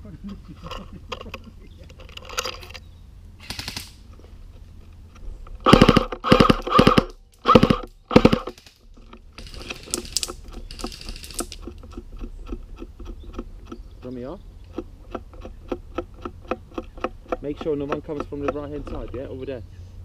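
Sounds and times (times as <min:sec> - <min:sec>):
airsoft gun rapid-fire bursts: 0:03.4 - 0:04.0, 0:05.6 - 0:08.7, 0:09.4 - 0:11.6.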